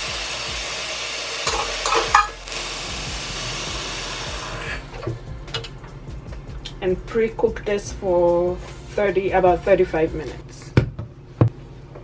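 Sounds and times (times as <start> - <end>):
tap water running into pot: 0.0 - 2.7.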